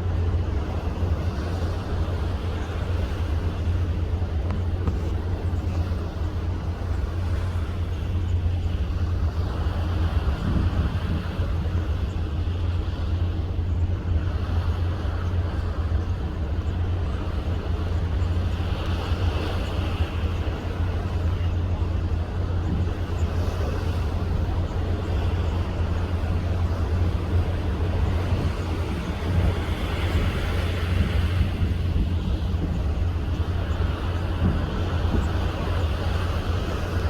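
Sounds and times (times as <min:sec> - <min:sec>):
ship engine drone: 0:00.0 - 0:37.0
rushing water noise: 0:11.2 - 0:37.0.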